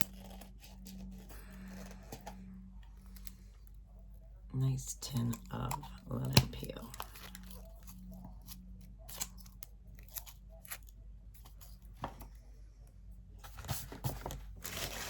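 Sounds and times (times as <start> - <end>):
packaging being handled: 5.2 - 12.2, 13.4 - 15.0.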